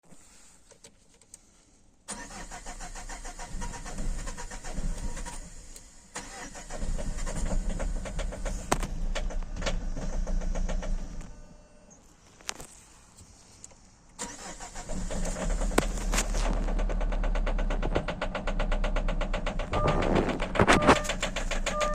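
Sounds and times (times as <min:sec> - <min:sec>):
starter motor cranking engine: 0:02.1 - 0:11.2, 0:14.2 - 0:21.9.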